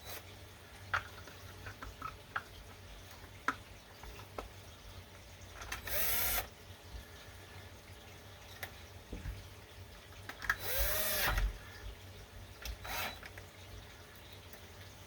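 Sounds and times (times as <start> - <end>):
plastic parts clicking: 0.9 - 4.5, 5.5 - 6.0, 10.2 - 11.5.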